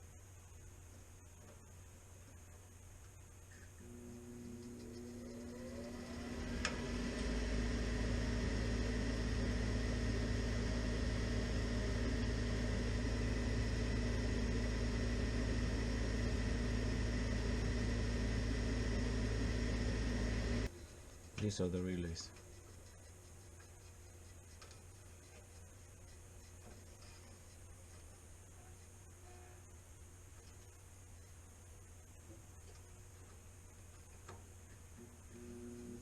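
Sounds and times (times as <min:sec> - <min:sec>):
furnace inducer motor humming: 0:03.7 - 0:20.7, 0:35.0 - 0:36.0.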